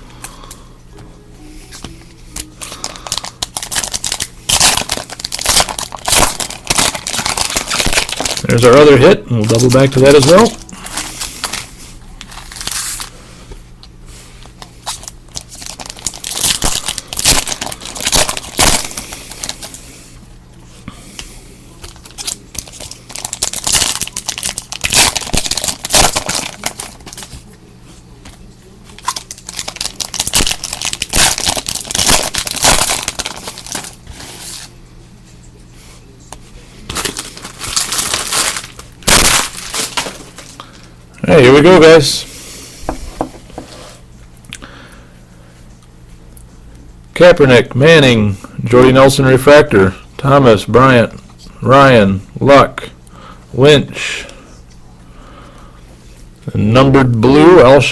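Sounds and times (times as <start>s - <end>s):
card pack wrappers tearing: 2.4s - 13.1s, 14.8s - 19.8s, 21.8s - 27.4s, 28.9s - 34.7s, 36.9s - 40.8s
wrappers crinkling: 2.4s - 13.2s, 14.6s - 19.8s, 21.8s - 27.5s, 28.9s - 34.7s, 36.8s - 41.8s.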